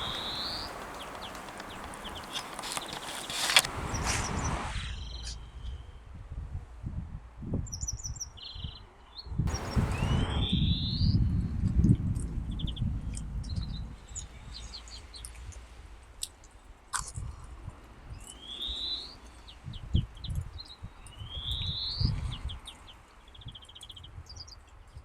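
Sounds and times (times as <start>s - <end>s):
loud rising buzzy bird phrases: 0.0s - 4.1s, 9.5s - 11.2s
songbirds chirping and singing: 0.0s - 4.1s, 7.8s - 11.3s, 18.2s - 25.0s
low uneven rumble: 0.0s - 5.7s.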